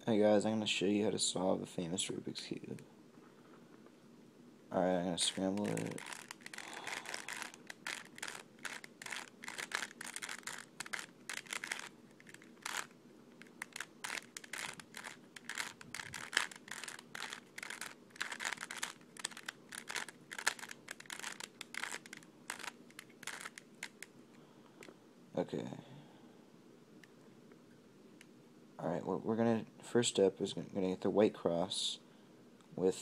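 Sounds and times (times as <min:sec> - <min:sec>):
plastic puzzle cube clacking: 0:05.2 - 0:24.1.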